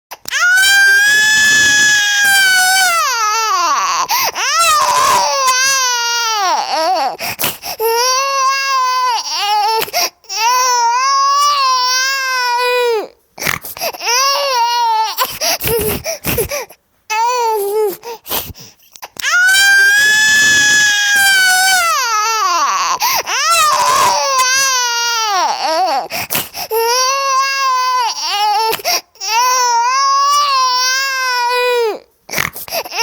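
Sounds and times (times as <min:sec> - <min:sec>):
infant crying: 0:00.3 - 0:13.2, 0:13.8 - 0:18.3, 0:19.2 - 0:33.0
infant gasping for breath: 0:04.1 - 0:04.4, 0:07.2 - 0:07.8, 0:13.4 - 0:14.0, 0:15.2 - 0:16.8, 0:17.8 - 0:19.1, 0:23.0 - 0:23.3, 0:26.0 - 0:26.8, 0:32.3 - 0:33.0.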